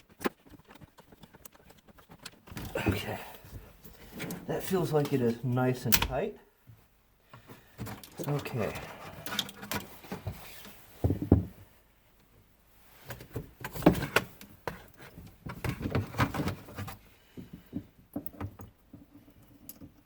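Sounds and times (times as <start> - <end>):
hand tools and metal parts clattering: 0.0 - 5.4, 7.8 - 11.4.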